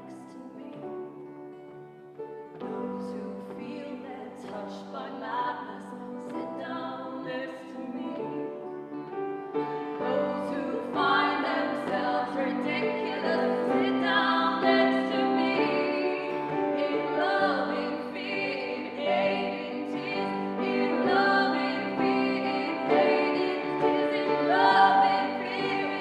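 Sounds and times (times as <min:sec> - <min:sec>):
women singing in harmony: 0:00.0 - 0:01.8, 0:02.6 - 0:26.0.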